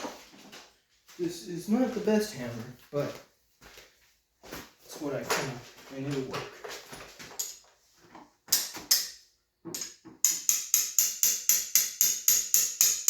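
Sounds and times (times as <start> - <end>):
hammer striking metal tool: 8.5 - 13.0.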